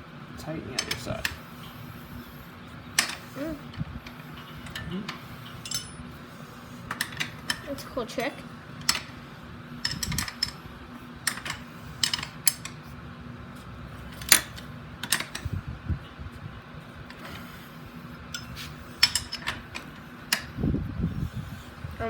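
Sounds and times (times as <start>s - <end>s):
metal wrenches clicking: 0.8s - 1.4s, 3.0s - 6.0s, 6.9s - 9.2s, 9.8s - 10.6s, 11.2s - 12.8s, 14.0s - 15.5s, 18.4s - 20.6s.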